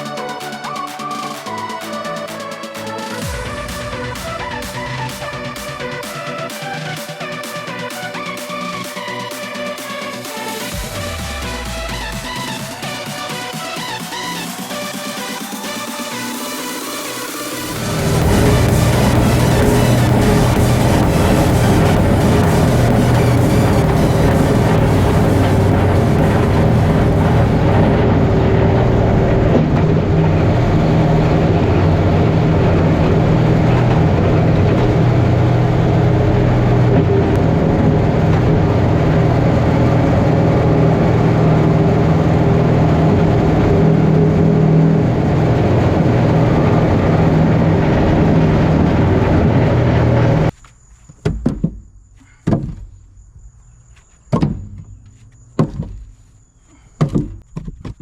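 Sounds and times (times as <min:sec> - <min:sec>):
engine running steadily: 0:02.2 - 0:14.6, 0:16.8 - 0:50.5
sharp knocks: 0:51.2 - 0:52.9, 0:54.3 - 0:56.1.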